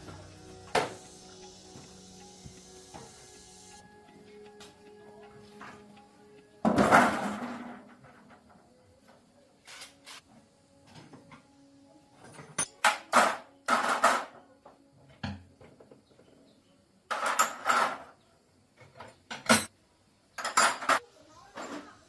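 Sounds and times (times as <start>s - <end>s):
metal tools clinking: 12.3s - 12.8s.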